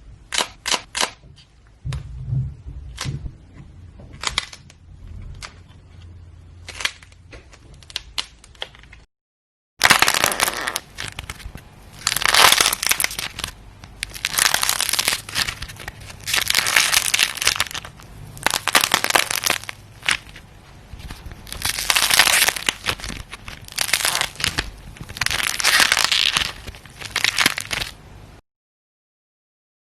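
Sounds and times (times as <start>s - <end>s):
clay cracking and crackling: 4.0s - 9.1s, 9.8s - 28.1s.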